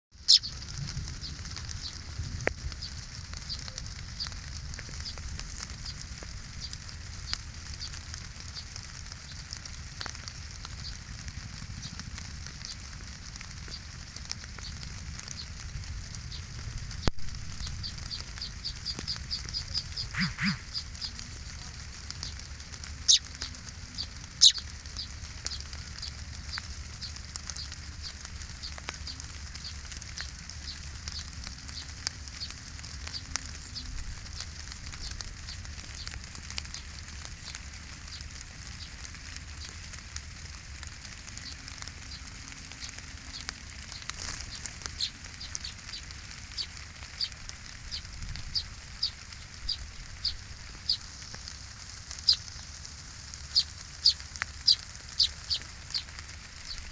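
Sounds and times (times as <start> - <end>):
sparrow chirping: 0.2 - 0.7, 1.3 - 2.0, 17.6 - 21.6, 23.0 - 33.4, 42.8 - 51.1, 52.1 - 52.7, 53.5 - 56.9.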